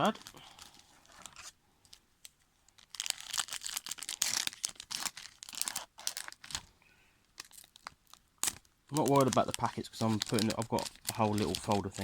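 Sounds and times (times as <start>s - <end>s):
wrapper tearing and crinkling: 2.7s - 6.7s, 7.4s - 12.0s.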